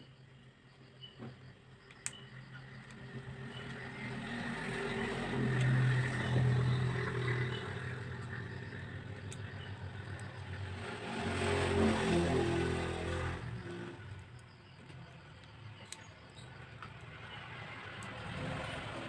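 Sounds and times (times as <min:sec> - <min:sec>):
vehicle engine running: 0:02.2 - 0:14.8.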